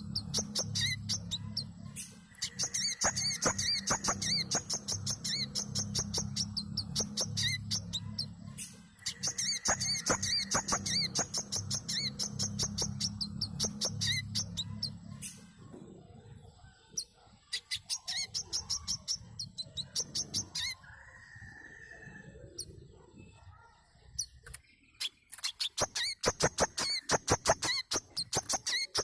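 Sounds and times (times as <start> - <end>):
sunbird chirping: 0.0 - 21.4.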